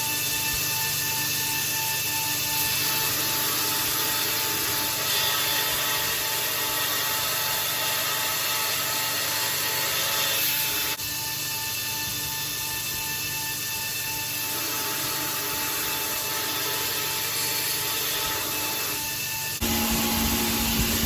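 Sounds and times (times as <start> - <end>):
power tool grinding steel: 0.0 - 21.0.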